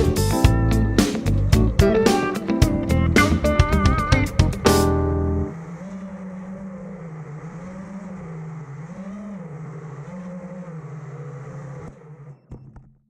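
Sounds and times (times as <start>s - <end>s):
small electric motors humming: 5.5s - 13.0s.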